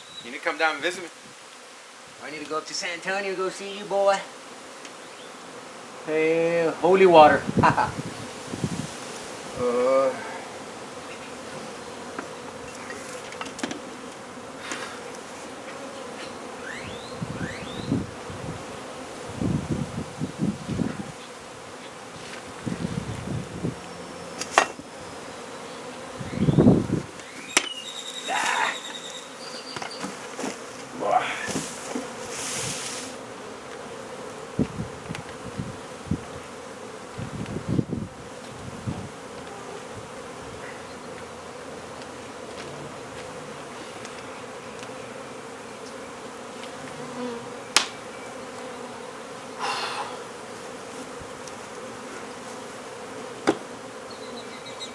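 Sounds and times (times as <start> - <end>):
bees buzzing: 0.0 - 54.9
knocks and scrapes: 29.8 - 30.9.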